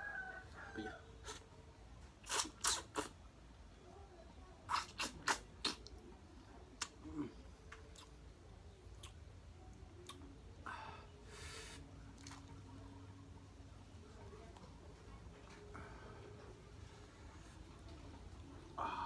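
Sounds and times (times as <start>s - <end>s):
chewing and mouth clicks: 2.2s - 3.2s, 4.7s - 6.0s, 6.8s - 7.0s, 7.7s - 8.2s, 8.9s - 9.2s.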